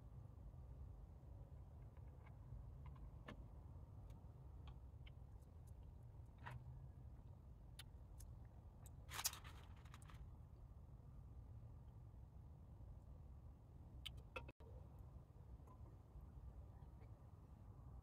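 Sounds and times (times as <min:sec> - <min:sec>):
crackly rustle: 0:08.2 - 0:10.3.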